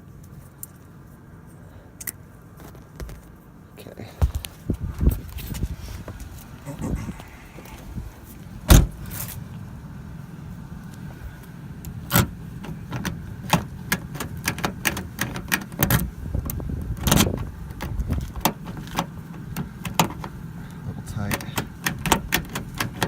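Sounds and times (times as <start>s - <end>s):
key clicking in a car lock: 12.1s - 20.4s, 21.3s - 23.0s.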